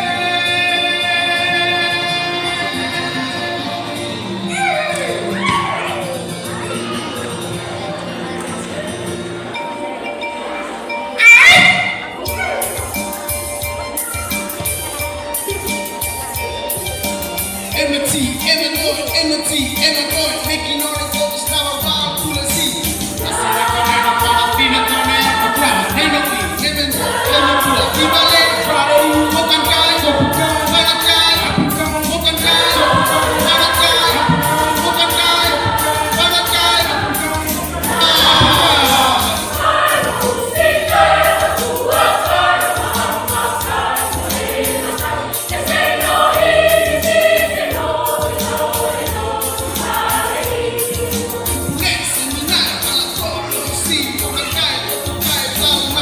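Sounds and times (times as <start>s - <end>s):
choir singing: 0.0s - 6.2s, 22.1s - 53.0s
steady beat: 11.5s - 56.0s.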